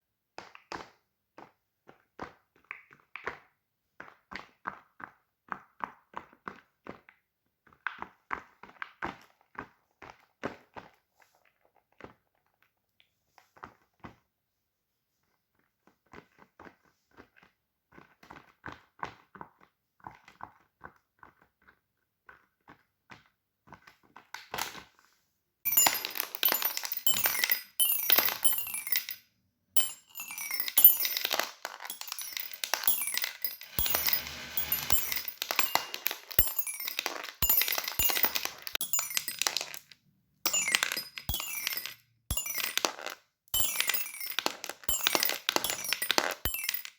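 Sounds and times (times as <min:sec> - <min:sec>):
dense clinking rattle: 0:25.7 - 0:29.2, 0:29.8 - 0:39.9, 0:40.5 - 0:46.9.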